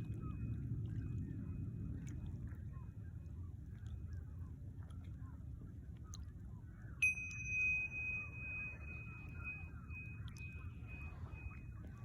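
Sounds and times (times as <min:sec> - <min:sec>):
meditation bell ringing: 0:07.0 - 0:11.8.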